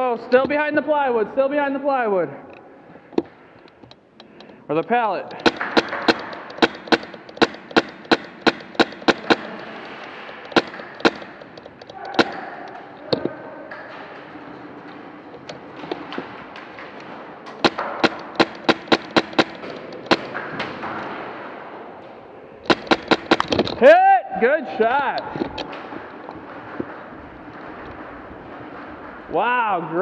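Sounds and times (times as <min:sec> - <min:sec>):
airsoft gun shots: 0:05.4 - 0:11.5, 0:12.1 - 0:12.6, 0:17.6 - 0:20.4, 0:22.7 - 0:23.7.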